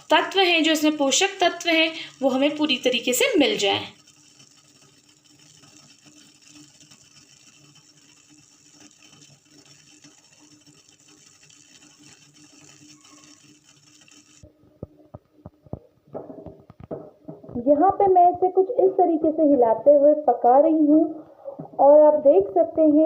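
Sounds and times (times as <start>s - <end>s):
pot boiling on gas stove: 0.0s - 23.0s.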